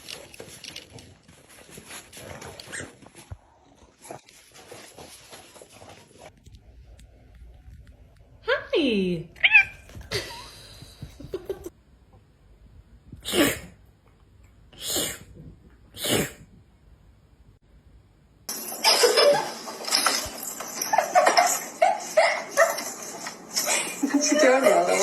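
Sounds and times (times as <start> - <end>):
person sneezing: 13.2 - 13.8, 16.0 - 16.4.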